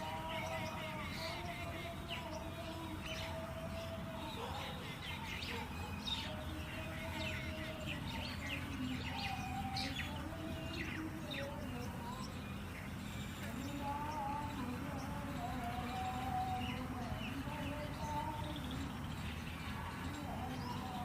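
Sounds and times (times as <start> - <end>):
small birds chirping: 0.0 - 21.0.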